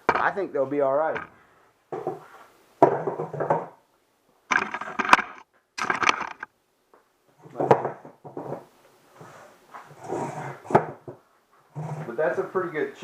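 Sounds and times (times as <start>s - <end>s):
metal chair knocking and rattling: 4.5s - 6.5s.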